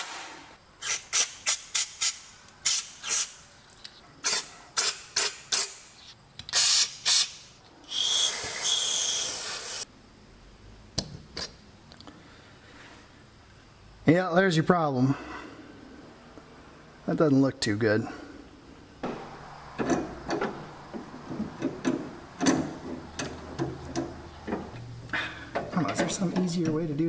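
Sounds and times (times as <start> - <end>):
hissing spray blasts: 6.5 - 9.9.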